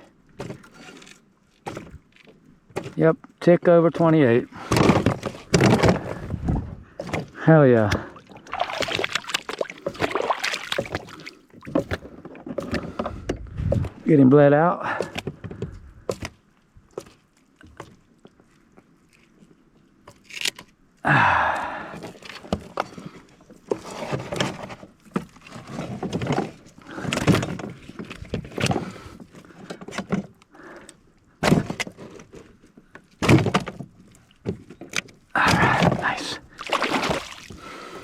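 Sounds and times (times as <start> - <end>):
knocks and thuds on plastic kayak: 4.0 - 14.0, 31.4 - 32.0, 33.2 - 37.6.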